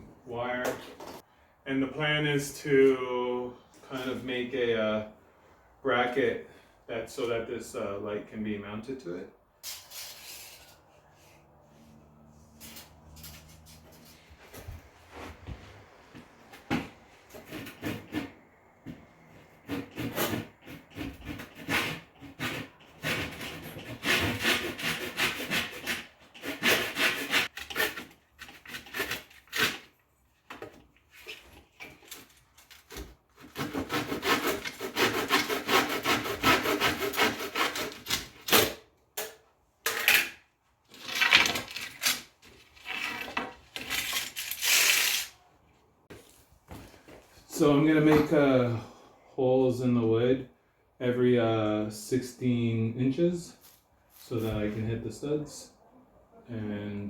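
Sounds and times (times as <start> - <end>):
saw cutting wood: 16.7 - 29.9, 33.4 - 38.5.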